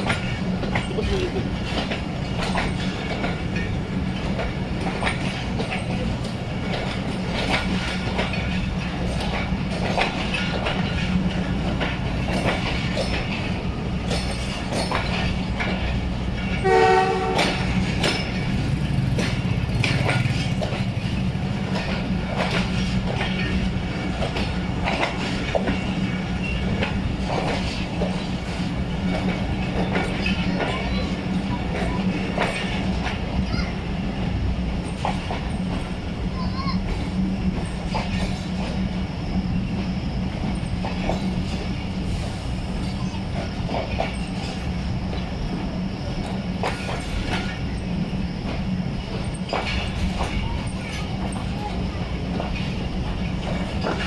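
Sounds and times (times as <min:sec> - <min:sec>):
train rumbling along track: 0:00.0 - 0:54.0
locomotive horn blast: 0:16.6 - 0:17.8
wheels knocking over rails: 0:17.4 - 0:25.6.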